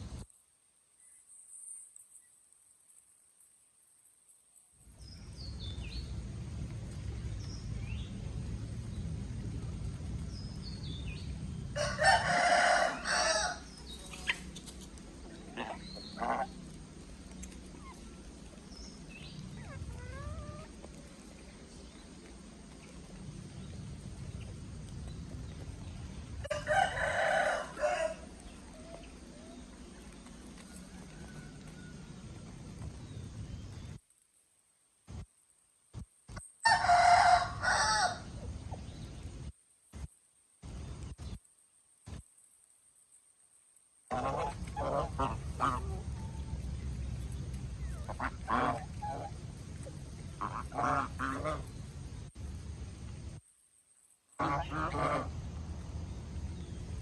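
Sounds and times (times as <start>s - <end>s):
low steady rumble: 4.8s - 34.0s, 36.0s - 41.4s, 44.0s - 53.5s, 54.3s - 57.0s
rooster crowing: 11.8s - 13.7s, 26.4s - 28.3s, 36.6s - 38.3s.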